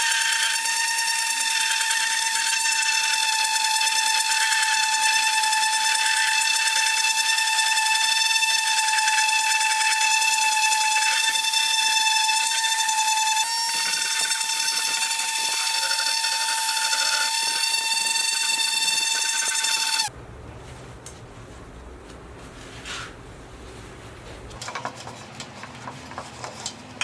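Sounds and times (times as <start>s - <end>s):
electric power tool whining: 0.0s - 20.1s.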